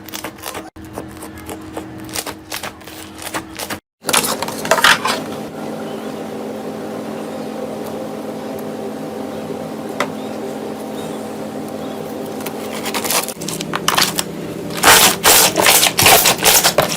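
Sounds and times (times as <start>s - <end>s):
steady hum: 4.0s - 16.9s.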